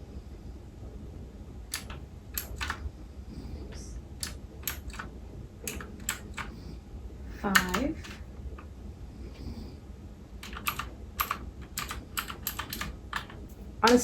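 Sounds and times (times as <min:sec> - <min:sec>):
mechanical keyboard clicks: 0:01.7 - 0:02.8, 0:04.2 - 0:06.5, 0:07.5 - 0:08.2, 0:10.4 - 0:14.0.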